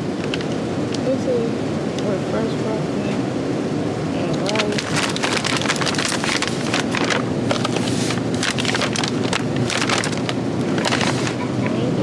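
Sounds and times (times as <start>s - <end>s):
plastic packaging crinkling: 0.0s - 1.0s, 4.3s - 11.6s.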